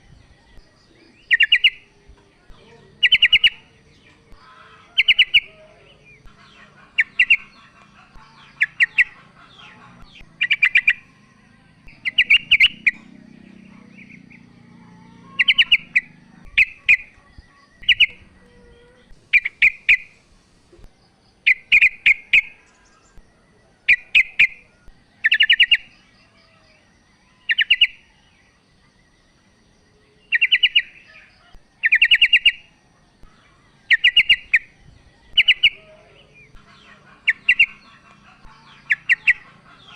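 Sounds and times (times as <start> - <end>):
bird chattering calls: 1.1 - 11.3, 11.9 - 20.2, 21.5 - 23.2, 25.2 - 25.9, 27.4 - 28.1, 30.3 - 32.7, 33.8 - 39.9.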